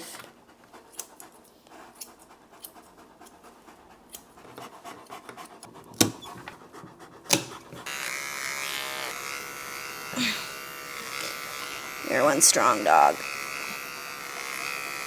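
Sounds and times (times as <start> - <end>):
dog panting: 0.0 - 7.9
electric clippers buzzing: 7.3 - 15.0.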